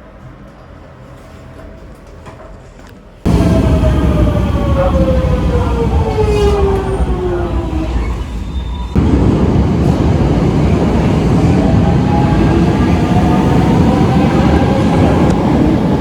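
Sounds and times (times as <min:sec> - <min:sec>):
electric train rumbling: 0:00.0 - 0:16.0.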